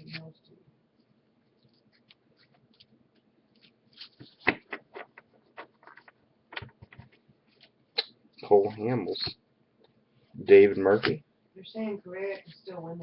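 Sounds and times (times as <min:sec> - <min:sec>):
trading cards flipped by hand: 0:01.6 - 0:08.1.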